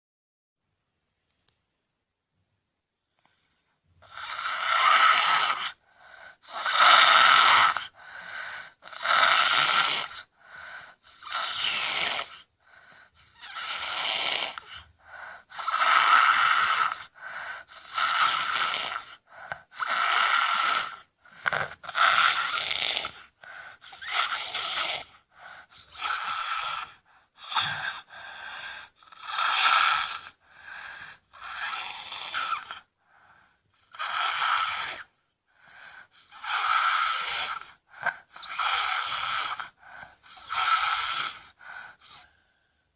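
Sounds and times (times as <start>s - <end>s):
quiet breaths: 2.9s - 42.9s
child snoring heavily: 4.0s - 42.9s.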